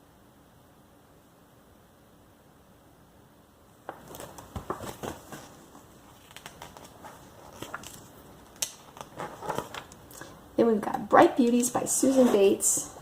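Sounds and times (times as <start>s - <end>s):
magazine pages rustling: 3.8s - 10.4s, 11.4s - 13.0s.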